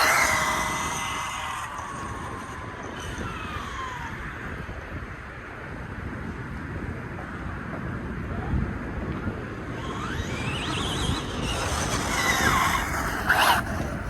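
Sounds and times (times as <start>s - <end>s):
electric motor whining: 0.0s - 4.7s, 9.7s - 14.0s
rough rumble: 0.0s - 4.7s, 9.8s - 14.0s.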